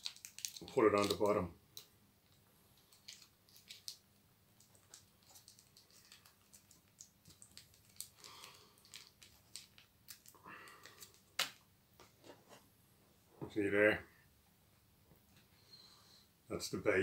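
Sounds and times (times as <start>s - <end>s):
food packaging crinkling: 0.0s - 11.6s.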